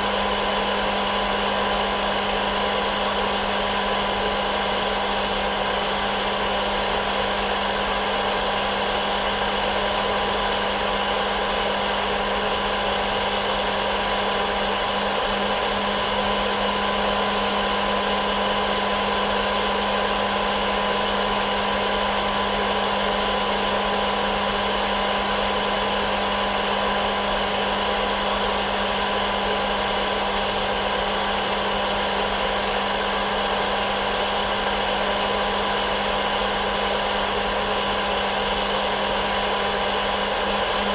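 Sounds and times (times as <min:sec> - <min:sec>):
hair dryer running: 0:00.0 - 0:40.9.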